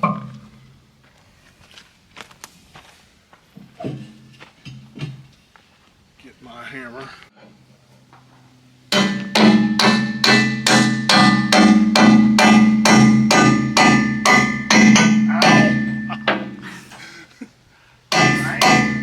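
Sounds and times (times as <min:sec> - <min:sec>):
hammer striking metal: 0:08.9 - 0:16.6, 0:18.1 - 0:19.0.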